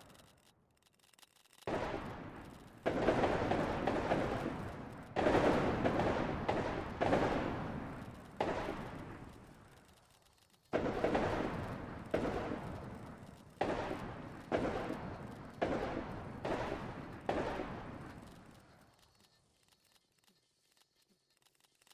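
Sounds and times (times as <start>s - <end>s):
distant musket shots echoing: 1.7s - 9.5s, 10.8s - 18.2s.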